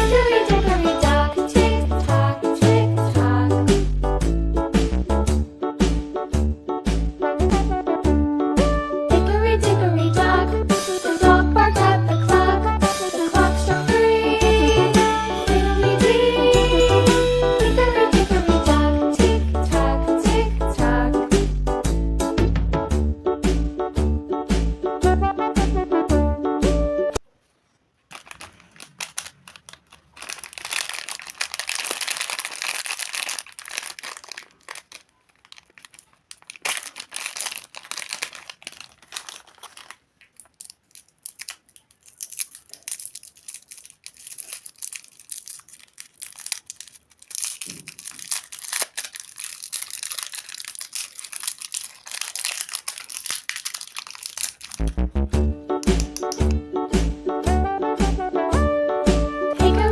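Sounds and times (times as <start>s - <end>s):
plastic wrappers crinkling and tearing: 27.2s - 55.1s, 55.8s - 56.5s.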